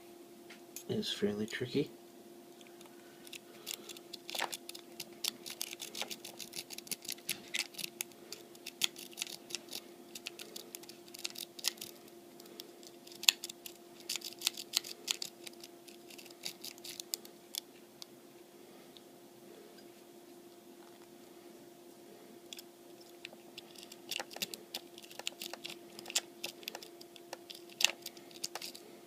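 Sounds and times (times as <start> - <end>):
lock pick metallic clicks and scrapes: 23.6 - 28.8.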